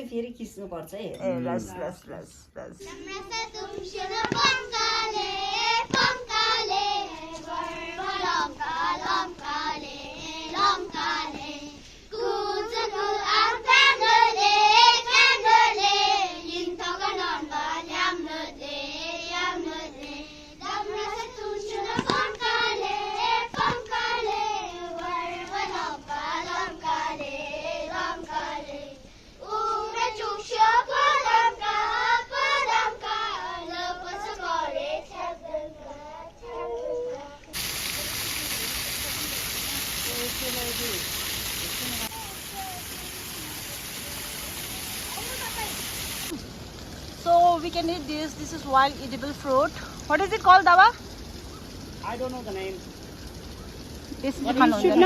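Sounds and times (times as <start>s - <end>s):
high voice singing unaccompanied: 2.8s - 37.6s.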